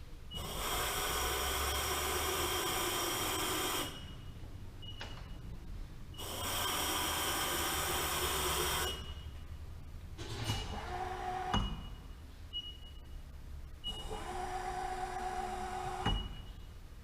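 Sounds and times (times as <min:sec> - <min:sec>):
mill table hissing whir: 0:00.4 - 0:04.2, 0:06.2 - 0:09.2, 0:13.9 - 0:16.4.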